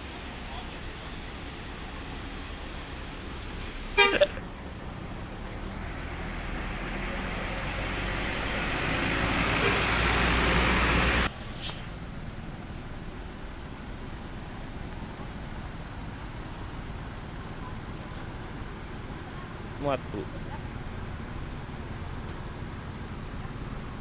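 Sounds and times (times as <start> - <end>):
bus engine: 0.0 - 24.0
road noise: 0.0 - 24.0
bus horn double toot: 3.9 - 4.4, 9.6 - 9.9.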